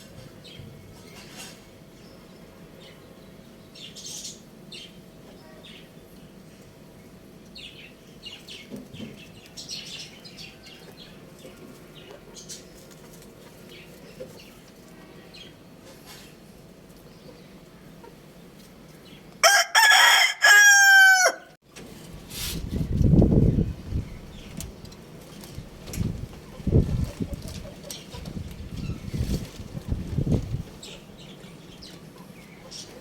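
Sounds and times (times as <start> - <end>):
rooster crowing: 19.4 - 21.6.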